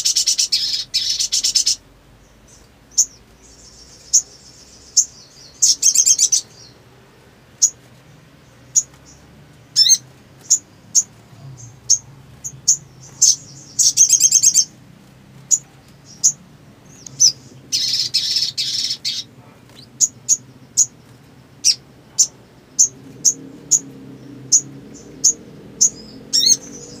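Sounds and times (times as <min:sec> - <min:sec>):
bird calling with sharp chips: 0:00.0 - 0:01.8, 0:02.5 - 0:06.8, 0:08.5 - 0:14.8, 0:15.5 - 0:21.0.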